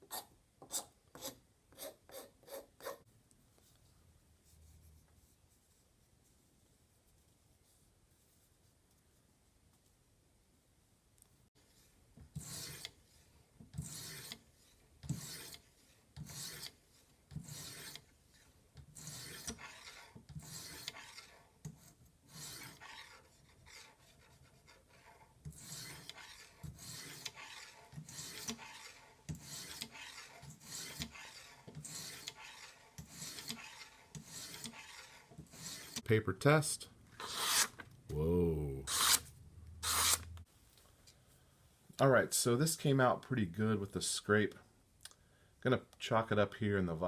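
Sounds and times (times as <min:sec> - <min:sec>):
knife blade scraping wood: 0:12.4 - 0:36.1, 0:37.2 - 0:37.8, 0:38.9 - 0:40.4.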